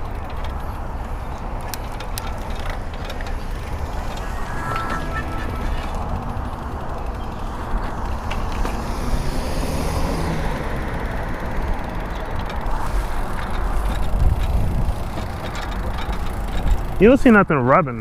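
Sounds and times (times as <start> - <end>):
bike tyres rolling: 0.0 - 4.9, 5.7 - 17.5
heavy low rumble: 2.4 - 7.2.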